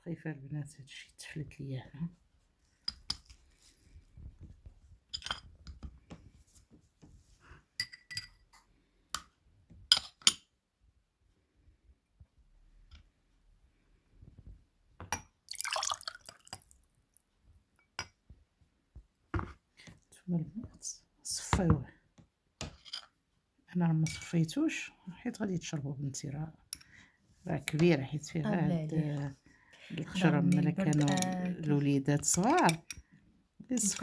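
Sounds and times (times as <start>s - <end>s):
glass and utensil clinks: 7.8s - 8.4s, 30.6s - 31.5s.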